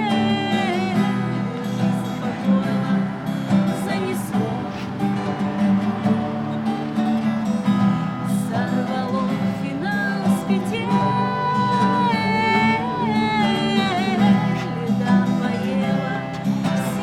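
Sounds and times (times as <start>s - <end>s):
woman singing with vibrato: 0.0s - 7.1s, 7.7s - 17.0s
guitar accompaniment: 0.0s - 17.0s.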